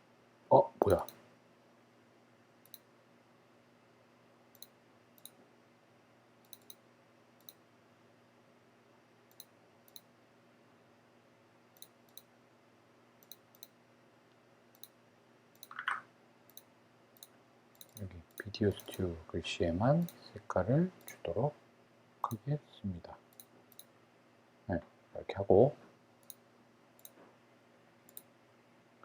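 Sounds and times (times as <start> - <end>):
low electrical hum: 0.0 - 29.0
faint computer mouse clicks: 2.6 - 2.9, 4.5 - 5.4, 6.4 - 6.8, 7.4 - 7.6, 9.3 - 10.1, 11.8 - 12.3, 13.2 - 13.8, 15.6 - 19.0, 26.2 - 26.4, 27.0 - 27.2, 28.1 - 28.3.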